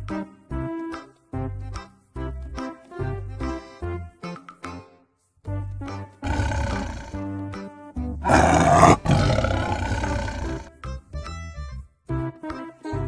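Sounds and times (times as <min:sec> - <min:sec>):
big cat roaring: 0:06.2 - 0:07.2, 0:08.2 - 0:10.7.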